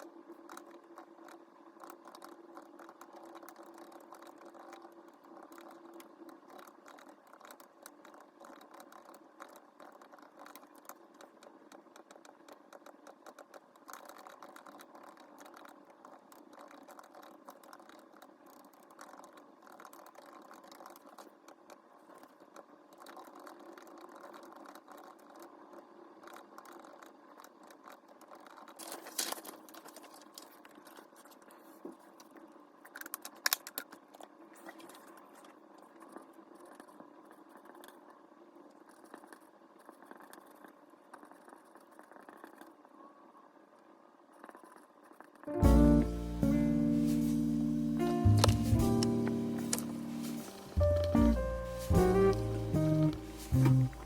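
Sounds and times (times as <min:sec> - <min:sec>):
small objects clicking and rattling: 0:00.0 - 0:38.1
faint steady hum: 0:00.0 - 0:54.0.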